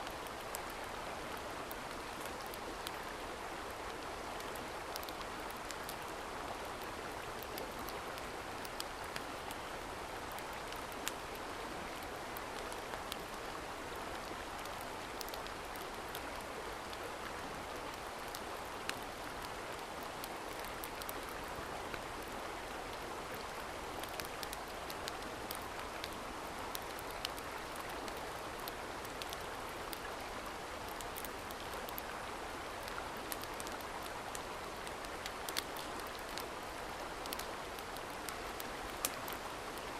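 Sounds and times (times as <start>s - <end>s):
small sharp crackles: 32.8s - 36.6s, 37.2s - 39.9s.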